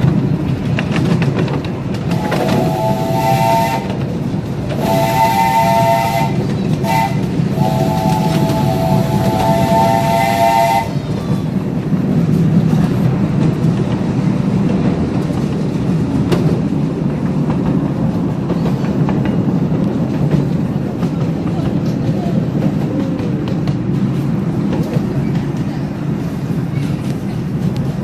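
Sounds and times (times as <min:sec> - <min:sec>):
train wheels rumbling on rails: 0:00.0 - 0:28.0
steam locomotive whistle: 0:02.1 - 0:04.1, 0:04.8 - 0:11.1.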